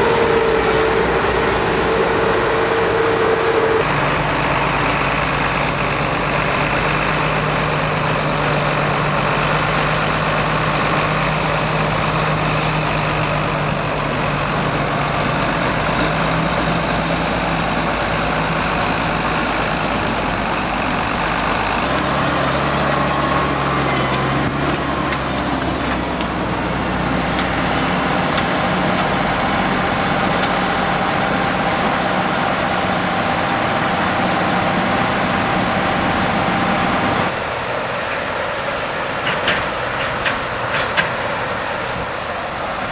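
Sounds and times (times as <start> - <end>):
diesel engines running: 0.0 - 42.9.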